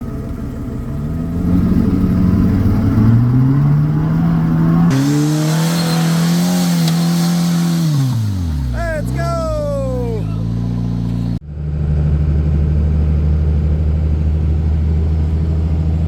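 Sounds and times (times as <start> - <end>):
vehicle engine revving: 1.1 - 8.8, 10.3 - 11.4.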